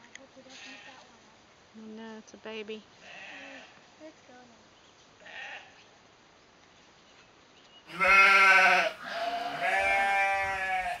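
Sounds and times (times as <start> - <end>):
sheep bleating: 3.0 - 3.8, 5.2 - 5.8, 7.9 - 11.0.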